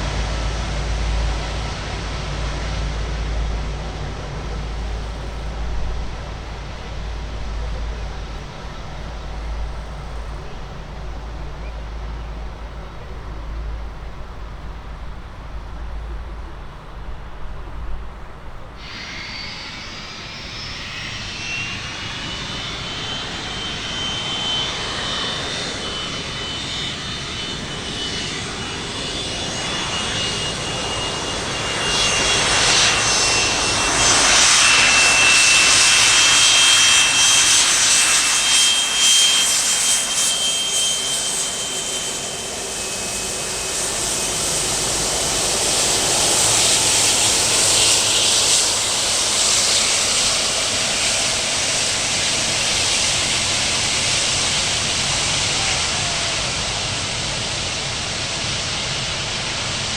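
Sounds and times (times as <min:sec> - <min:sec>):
jet airliner passing: 0:00.0 - 0:17.3, 0:18.4 - 0:59.9.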